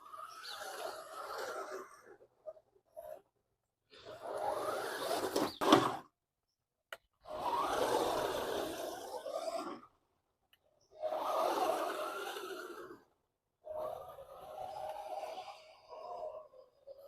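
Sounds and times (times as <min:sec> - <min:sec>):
tyres scraping over ground: 0:00.0 - 0:03.3, 0:03.9 - 0:06.1, 0:07.2 - 0:09.9, 0:10.9 - 0:17.0
electric motor whirring: 0:04.0 - 0:06.0, 0:07.3 - 0:09.9, 0:11.0 - 0:13.1, 0:13.7 - 0:17.0.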